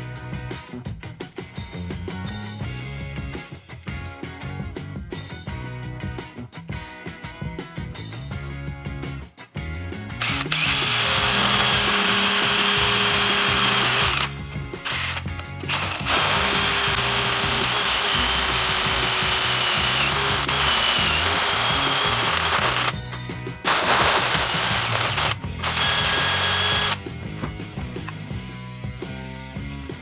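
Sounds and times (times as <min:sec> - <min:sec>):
background music with steady beat: 0:00.0 - 0:30.0
electric power tool working wood: 0:10.2 - 0:28.2.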